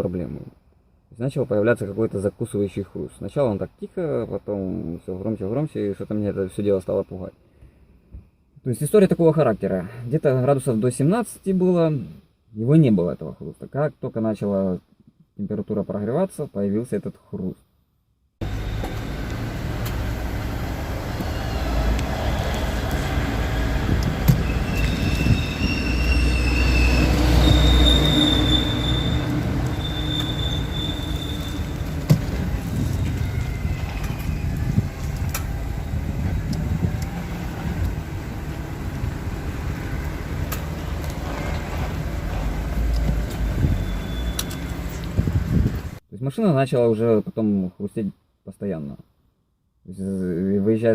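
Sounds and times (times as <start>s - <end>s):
suspension low rumble: 18.4s - 46.0s
faint high squeak: 24.4s - 31.9s, 33.0s - 34.8s, 43.7s - 45.0s.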